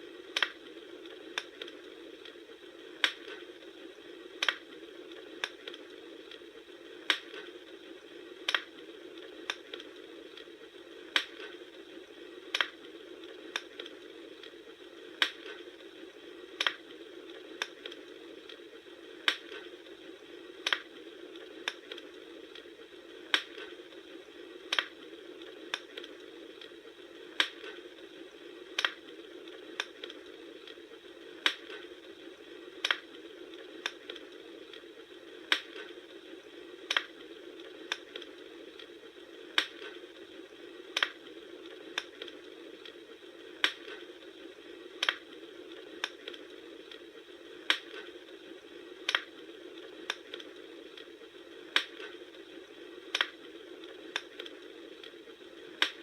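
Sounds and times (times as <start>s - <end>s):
campfire popping: 0.0s - 56.0s
low fire hiss: 0.0s - 56.0s.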